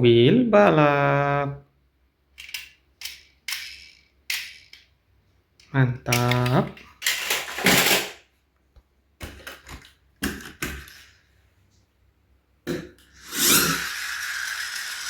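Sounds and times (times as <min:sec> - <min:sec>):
plastic toys knocking and clicking: 0:02.4 - 0:04.9, 0:06.1 - 0:08.2, 0:09.2 - 0:11.1.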